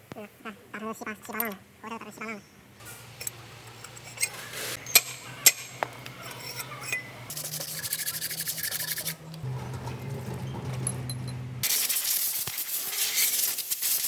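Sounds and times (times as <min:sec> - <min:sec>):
metal scraping and rubbing: 0:02.8 - 0:14.0
metal parts clinking: 0:03.2 - 0:11.8.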